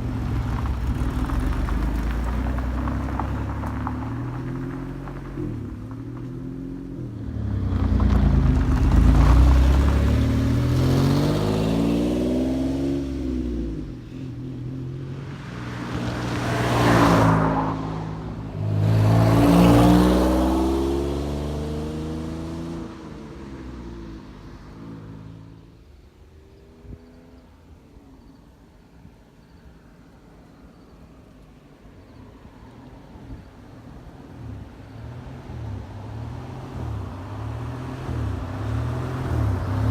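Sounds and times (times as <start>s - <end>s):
car engine revving: 7.2s - 25.3s, 34.3s - 39.9s.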